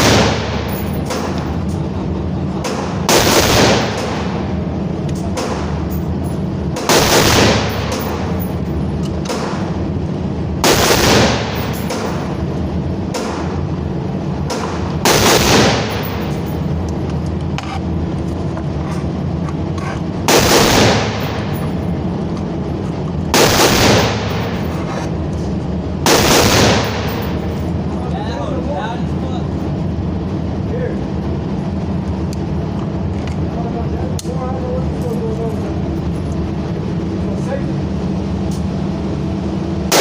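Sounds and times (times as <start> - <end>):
gunshots: 0.0 - 1.4, 2.6 - 4.6, 6.8 - 8.5, 10.6 - 12.4, 14.5 - 16.6, 20.3 - 21.8, 23.3 - 24.8, 26.0 - 27.6
steady background noise: 0.0 - 40.0.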